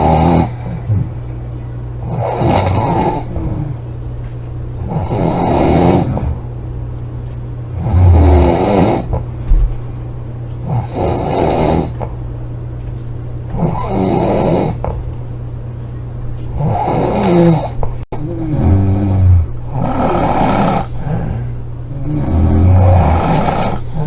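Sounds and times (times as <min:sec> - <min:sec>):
person snoring loudly: 0:00.0 - 0:01.2, 0:02.0 - 0:03.8, 0:04.8 - 0:06.4, 0:07.8 - 0:09.2, 0:10.6 - 0:12.1, 0:13.5 - 0:14.9, 0:16.6 - 0:24.0
steady low hum: 0:00.0 - 0:24.0.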